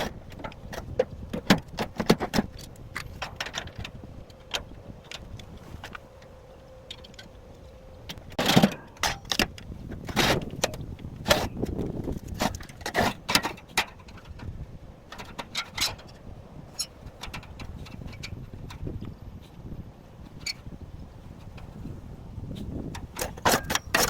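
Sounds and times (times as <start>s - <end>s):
steel parts clanking together: 23.0s - 24.0s.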